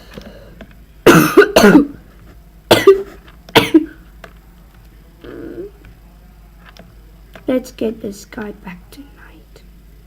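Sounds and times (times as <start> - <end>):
person coughing: 1.1 - 2.0, 2.7 - 4.0.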